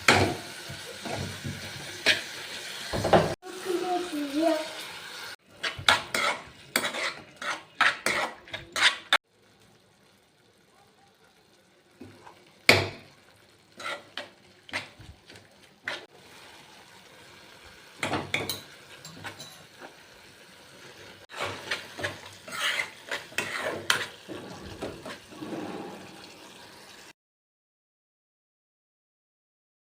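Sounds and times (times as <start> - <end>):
metal spoon scraping a pan: 0.1 - 3.0, 5.5 - 9.2, 13.7 - 16.1, 18.0 - 20.0, 20.8 - 26.3.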